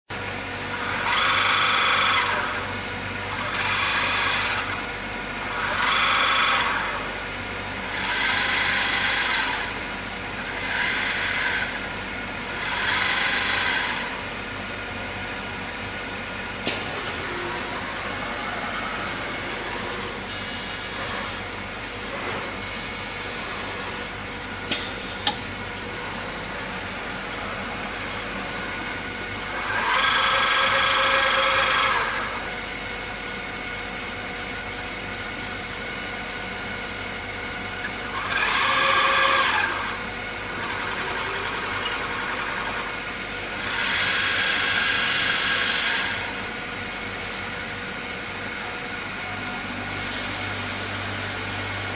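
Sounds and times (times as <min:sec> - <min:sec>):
multi-tone machine whine: 0:00.1 - 0:51.9
soldering machine humming: 0:16.9 - 0:31.8.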